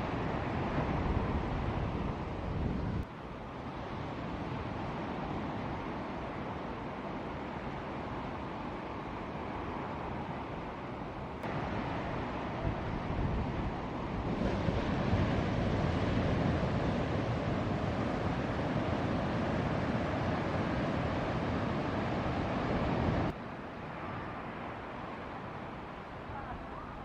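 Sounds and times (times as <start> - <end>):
wind noise on microphone: 0.0 - 3.1, 11.4 - 23.3
ocean surf breaking: 11.4 - 27.0.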